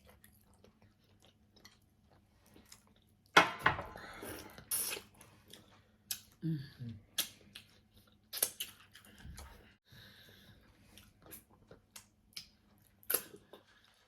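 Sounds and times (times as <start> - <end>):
chewing and mouth smacks: 0.0 - 3.3, 7.1 - 9.7, 10.8 - 14.0.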